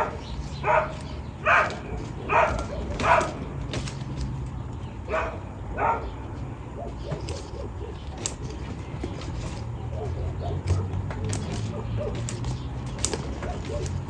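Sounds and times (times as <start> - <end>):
dog barking: 0.0 - 3.4, 5.1 - 8.3, 9.9 - 12.4, 13.4 - 14.0.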